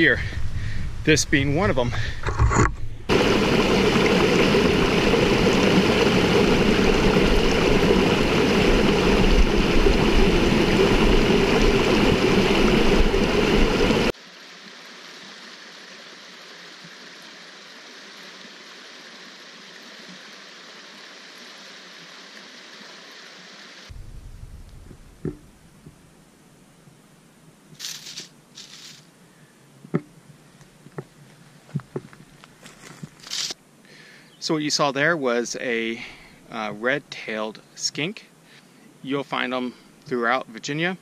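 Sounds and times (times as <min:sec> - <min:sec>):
stream rushing: 0:03.1 - 0:23.9
faint hiss: 0:11.9 - 0:31.8, 0:32.4 - 0:41.0.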